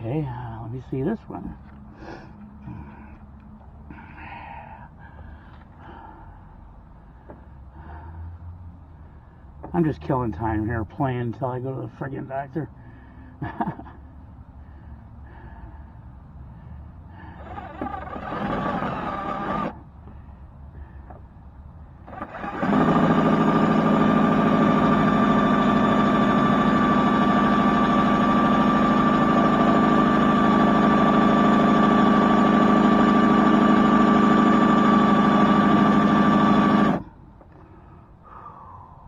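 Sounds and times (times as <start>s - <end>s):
electric drill whining: 17.4s - 19.8s, 22.1s - 37.0s.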